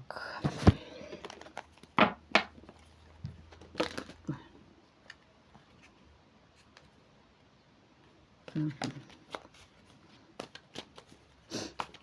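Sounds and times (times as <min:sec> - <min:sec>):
cards rustling: 0:00.4 - 0:02.0, 0:08.8 - 0:12.0.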